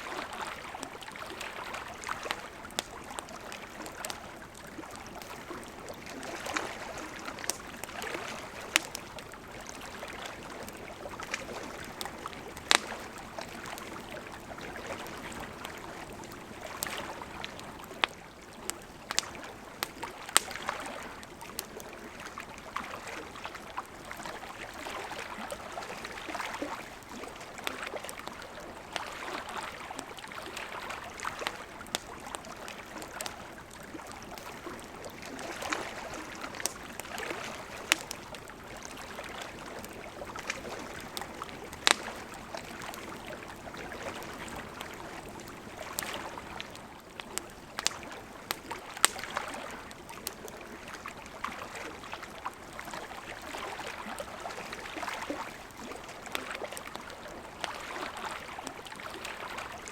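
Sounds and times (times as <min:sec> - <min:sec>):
lake water lapping at shore: 0:00.0 - 0:59.9
campfire crackling and popping: 0:00.1 - 0:59.9.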